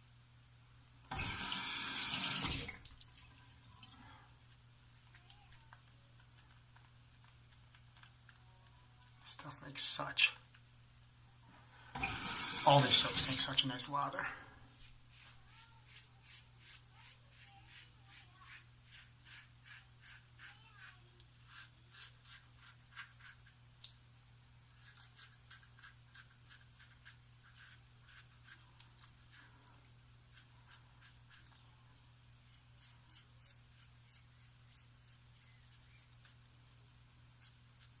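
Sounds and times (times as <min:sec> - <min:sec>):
razor scratching on lathered skin: 0:14.8 - 0:23.6, 0:24.7 - 0:29.6, 0:30.3 - 0:31.6, 0:32.4 - 0:36.4, 0:37.4 - 0:38.0.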